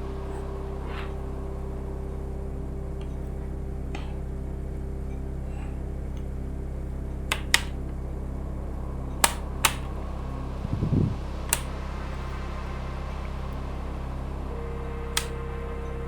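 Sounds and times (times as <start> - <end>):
steady low hum: 0.0 - 16.0
sharp clicks: 9.2 - 9.9.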